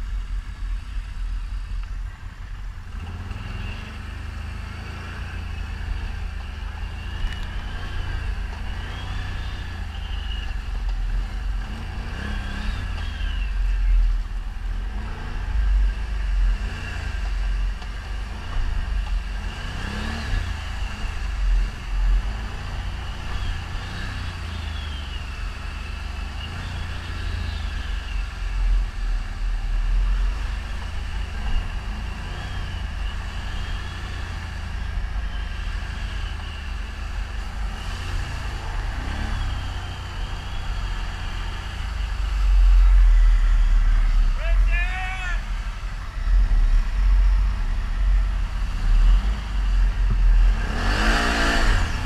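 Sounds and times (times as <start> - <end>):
quad bike engine revving: 2.9 - 10.4, 11.2 - 13.4, 18.0 - 28.2, 29.6 - 44.6, 46.2 - 52.0.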